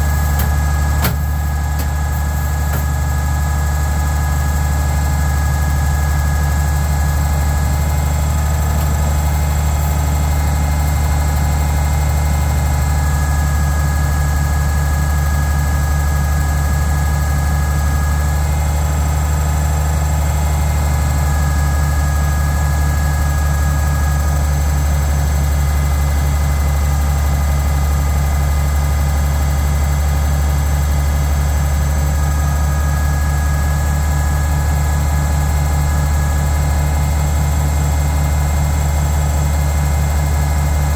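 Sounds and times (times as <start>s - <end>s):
tractor engine idling: 0.0s - 40.9s.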